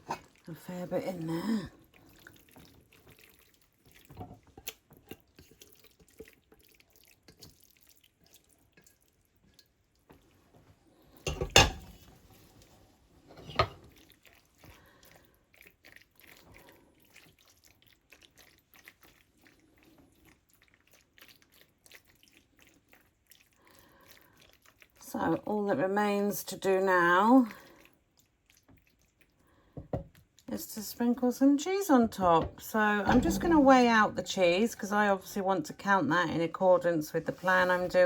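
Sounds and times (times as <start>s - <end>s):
wet sticky scraping of food: 0.0s - 0.8s, 1.8s - 10.3s
metal knocking on dish: 11.3s - 11.9s, 32.4s - 33.6s.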